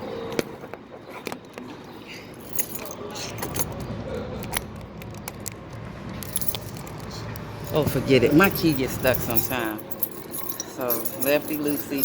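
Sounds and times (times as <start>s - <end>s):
keys jangling: 2.4s - 12.0s.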